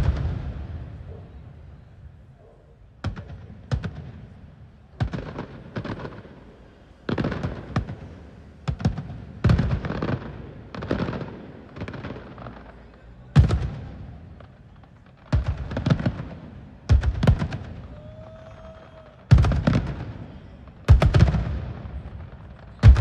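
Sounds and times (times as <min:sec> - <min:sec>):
fireworks booming: 0:00.0 - 0:02.4, 0:03.0 - 0:23.0.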